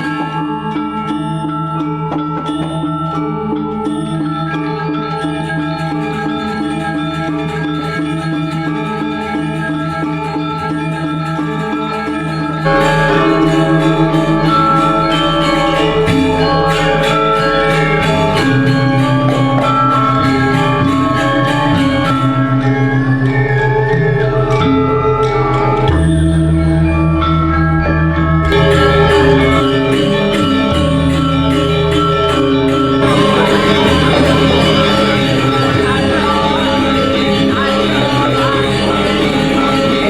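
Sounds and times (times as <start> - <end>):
mallet percussion music: 0.0 - 40.0
bass line and beat: 12.3 - 40.0.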